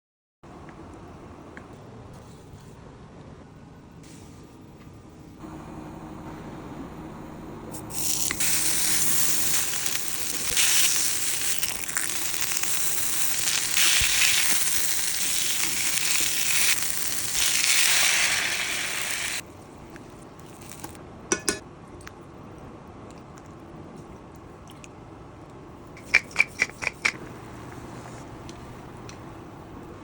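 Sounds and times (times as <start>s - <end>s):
meat sizzling in a frying pan: 7.9s - 19.4s.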